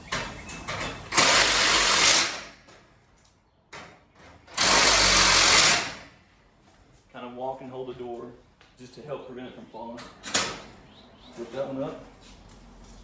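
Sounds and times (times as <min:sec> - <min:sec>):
power driver driving screws: 0:01.1 - 0:02.5, 0:04.5 - 0:06.0.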